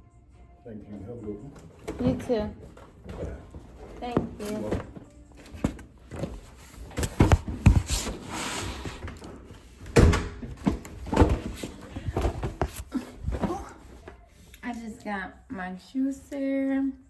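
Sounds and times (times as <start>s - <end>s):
box knocks and thumps: 5.6s - 8.2s, 9.9s - 13.7s.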